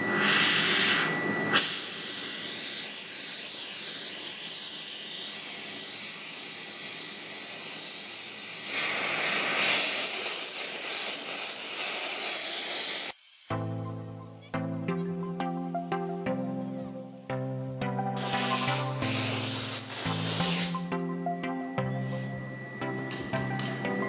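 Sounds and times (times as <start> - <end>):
hot steel hissing in water: 0.1 - 13.6, 18.2 - 20.8.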